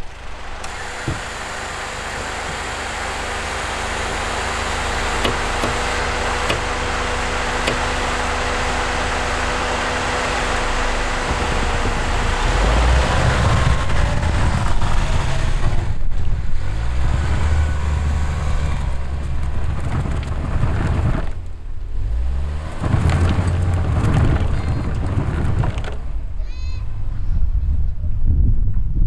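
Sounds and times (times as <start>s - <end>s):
road noise: 0.0s - 29.0s
vehicle engine: 0.0s - 29.0s.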